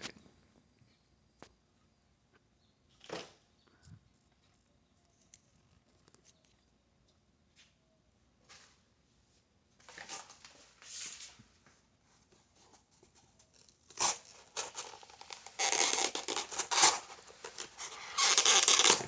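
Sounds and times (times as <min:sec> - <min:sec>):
knife tearing through cardboard: 0:13.8 - 0:19.0.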